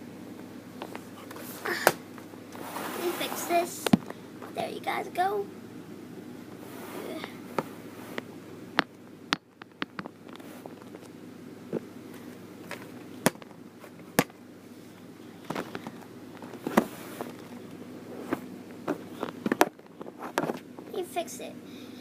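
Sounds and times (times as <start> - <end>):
faint steady hum: 0.0 - 22.0
handling clicks and knocks: 8.8 - 11.1.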